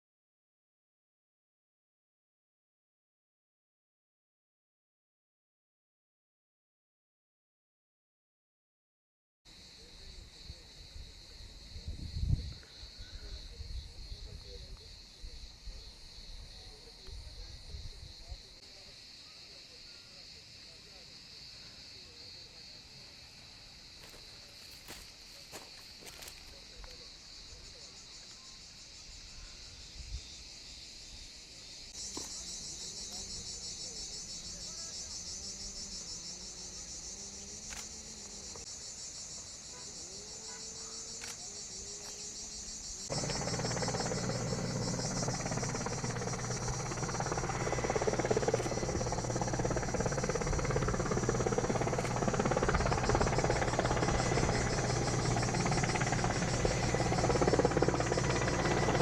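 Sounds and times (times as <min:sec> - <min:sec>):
insects shrilling: 0:32.0 - 0:59.0
helicopter engine and rotor drone: 0:41.0 - 0:59.0.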